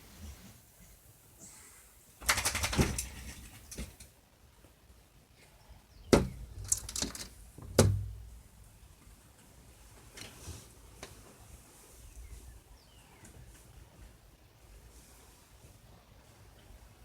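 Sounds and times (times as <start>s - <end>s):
bird flapping: 2.2s - 4.0s.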